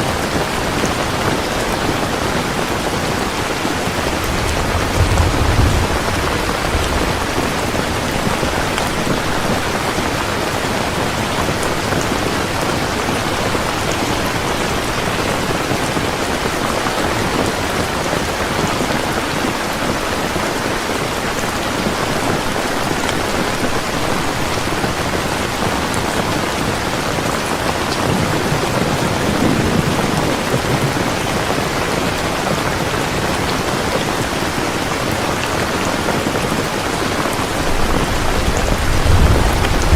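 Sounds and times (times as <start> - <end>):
steady rain falling: 0.0 - 39.9
thunder rumbling: 0.1 - 16.2, 37.4 - 39.9.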